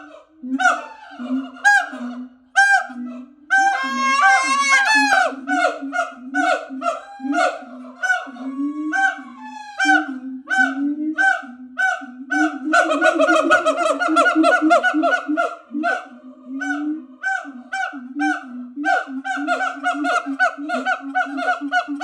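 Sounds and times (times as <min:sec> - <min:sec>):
apes honking barks: 0:03.8 - 0:09.3, 0:09.9 - 0:12.9, 0:14.5 - 0:22.0.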